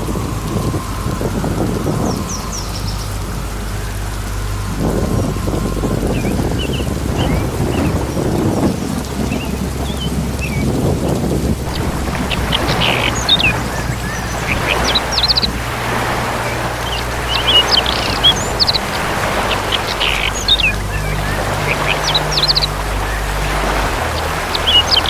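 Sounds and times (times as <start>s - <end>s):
steady low hum: 0.0s - 25.0s
birds chirping: 11.7s - 25.0s.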